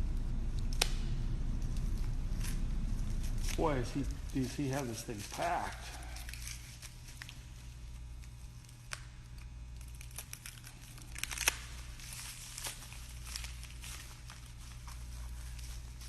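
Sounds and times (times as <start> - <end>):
packing material crackling and rustling: 1.6 - 16.0.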